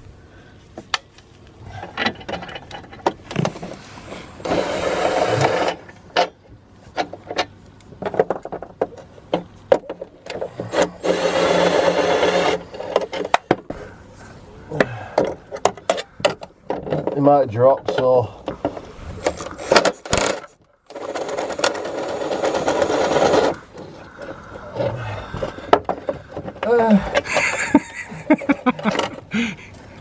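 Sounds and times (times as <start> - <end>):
metal clicks and knocks: 1.8 - 3.8, 5.6 - 10.9, 14.8 - 21.8
tool rasping on metal: 10.5 - 13.4, 21.0 - 24.0.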